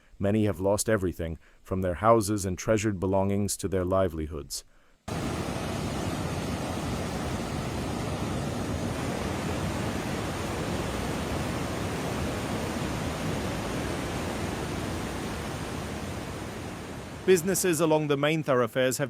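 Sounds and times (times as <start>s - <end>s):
floodwater rushing: 5.1s - 17.8s.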